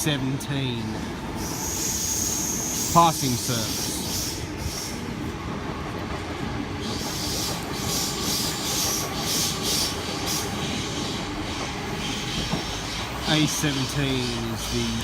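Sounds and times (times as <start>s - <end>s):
electric train rail rumble: 0.0s - 15.0s
pulsing hiss: 1.4s - 5.0s, 6.8s - 15.0s.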